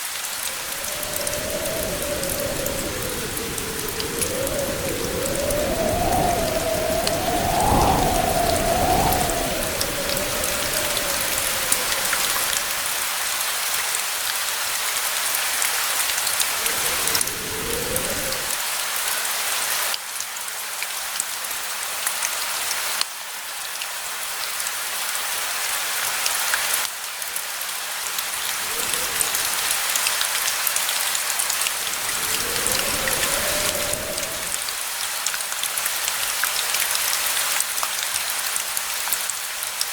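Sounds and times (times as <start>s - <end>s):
rain drops ticking on a surface: 0.0s - 39.9s
distant thunder rumbling: 31.7s - 34.7s.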